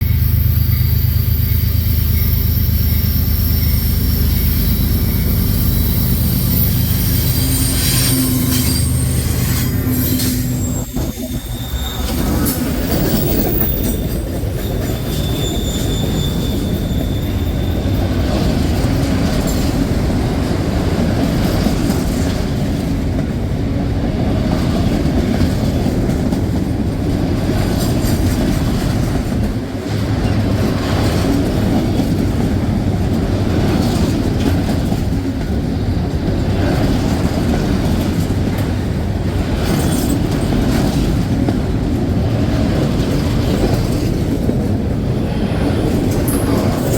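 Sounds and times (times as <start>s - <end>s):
train rumbling past: 0.0s - 46.9s
wheel squeal: 0.1s - 19.7s, 39.5s - 41.3s, 42.9s - 46.9s.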